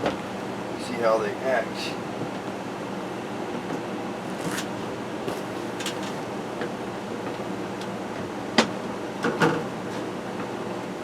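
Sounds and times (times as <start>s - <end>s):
air conditioning hum: 0.0s - 11.0s.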